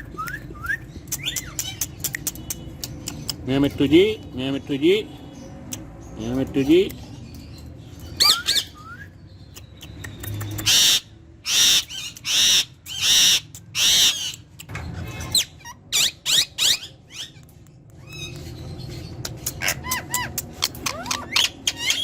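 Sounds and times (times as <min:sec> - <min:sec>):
parrot chirps and whistles: 0:08.2 - 0:09.2, 0:15.2 - 0:17.4
parrot screeching: 0:10.6 - 0:14.4, 0:15.1 - 0:17.4, 0:19.6 - 0:22.0.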